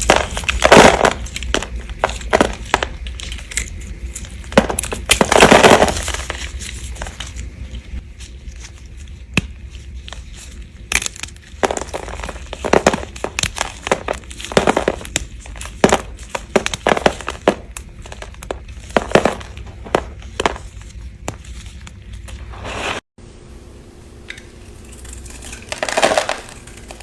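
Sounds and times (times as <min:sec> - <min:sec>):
bar soap crunching as cut: 0:10.8 - 0:19.5.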